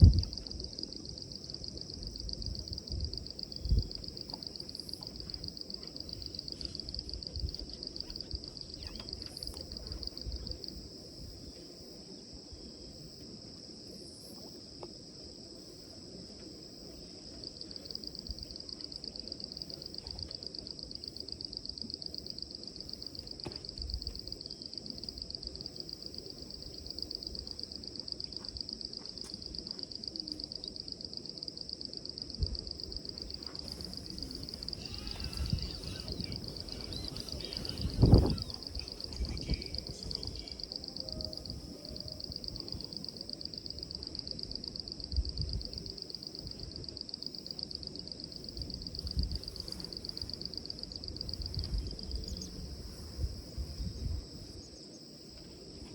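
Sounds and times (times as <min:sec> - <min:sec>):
insect trilling: 0:02.0 - 0:10.8, 0:32.8 - 0:44.2.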